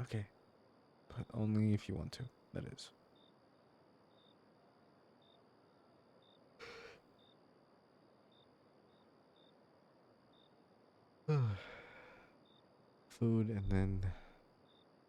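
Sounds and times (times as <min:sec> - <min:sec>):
short breath: 0:06.6 - 0:07.0, 0:11.3 - 0:12.3
man sighing: 0:11.3 - 0:12.2.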